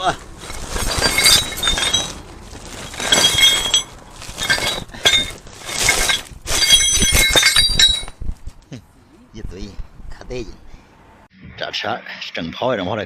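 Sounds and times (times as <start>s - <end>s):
metal parts clanking: 0.3s - 8.2s.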